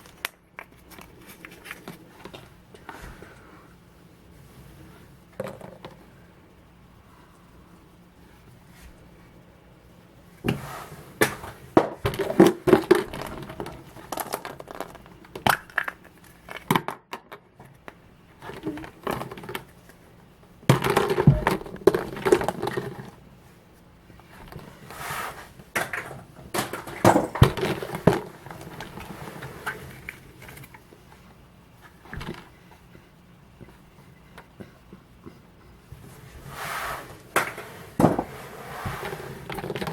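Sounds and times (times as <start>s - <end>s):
foil wrappers crinkling: 0.0s - 2.4s.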